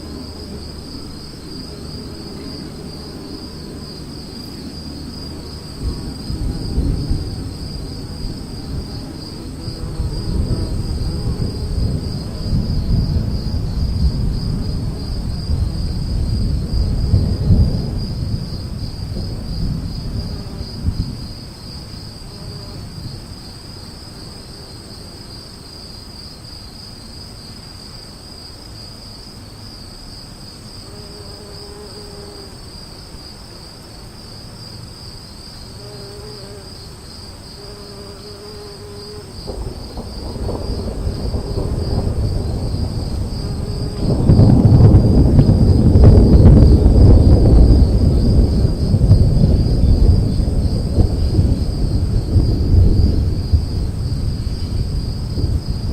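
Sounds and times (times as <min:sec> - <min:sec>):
thunder rumbling: 0:00.0 - 0:24.2, 0:39.2 - 0:55.9
crickets chirping: 0:00.0 - 0:55.9.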